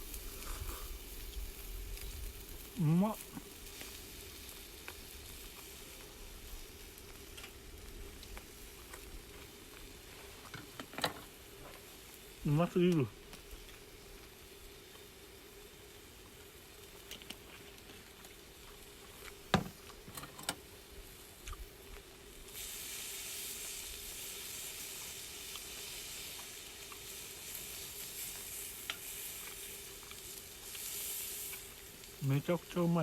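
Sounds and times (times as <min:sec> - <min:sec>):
meat sizzling: 0:00.0 - 0:33.0.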